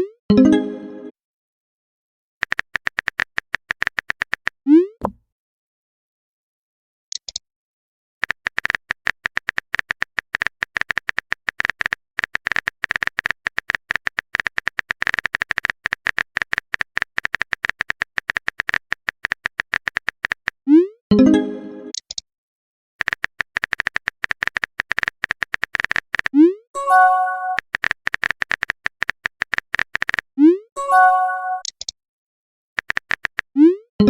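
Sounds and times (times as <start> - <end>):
typing clicks: 2.4 - 4.6, 7.1 - 7.4, 8.2 - 20.5, 23.0 - 26.4, 27.5 - 30.2, 31.5 - 32.0, 32.8 - 33.5.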